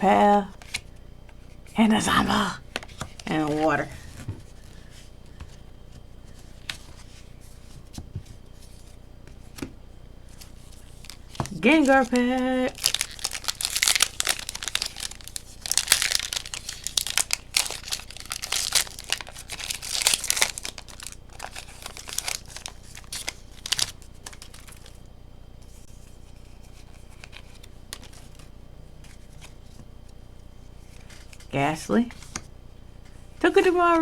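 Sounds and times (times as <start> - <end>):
faint background hum: 0.0 - 34.0
foil wrapper tearing and crinkling: 10.8 - 25.0.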